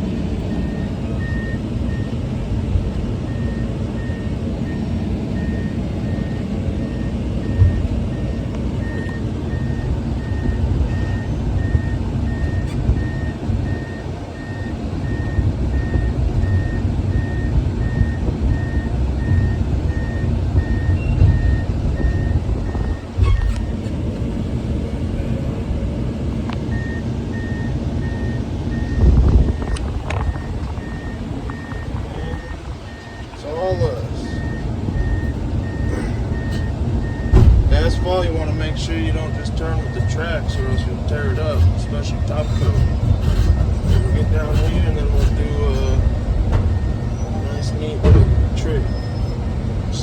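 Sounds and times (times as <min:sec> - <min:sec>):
travel alarm beeping: 0:00.0 - 0:25.1, 0:26.0 - 0:50.0
excavator diesel engine running: 0:00.0 - 0:50.0.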